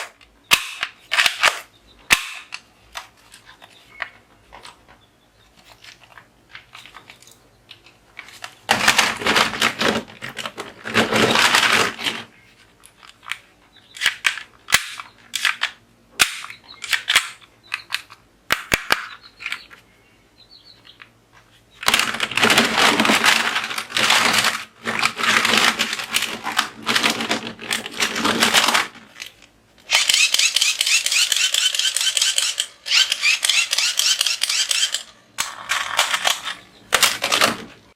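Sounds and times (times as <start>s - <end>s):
toy guns rattling: 8.2s - 12.3s, 14.0s - 18.2s, 21.8s - 37.8s.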